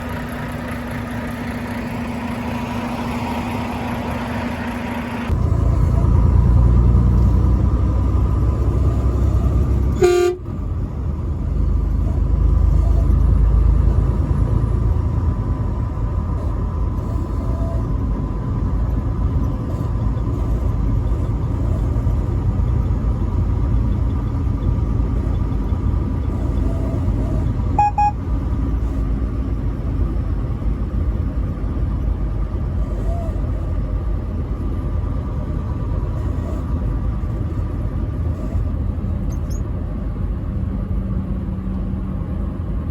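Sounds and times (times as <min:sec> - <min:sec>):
truck engine and road rumble: 0:00.0 - 0:42.9
truck horn blast: 0:08.6 - 0:10.6, 0:26.4 - 0:28.3
high-pitched beep: 0:27.8 - 0:28.2.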